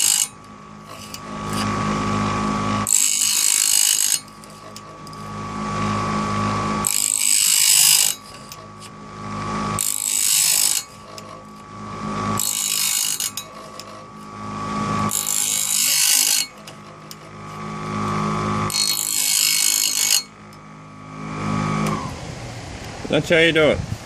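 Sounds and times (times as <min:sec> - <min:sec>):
motor humming: 0:00.0 - 0:23.2
grinding wheel hissing grind: 0:00.0 - 0:23.6.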